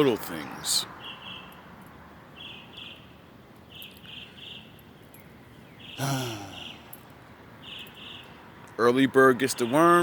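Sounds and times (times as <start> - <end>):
crickets chirping: 3.7 - 8.4.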